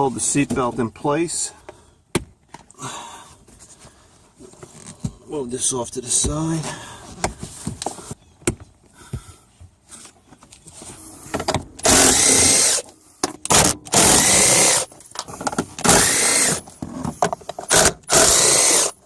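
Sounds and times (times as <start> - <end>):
cordless drill motor whine: 11.8 - 12.9, 13.6 - 14.9, 15.9 - 16.6, 17.7 - 18.9.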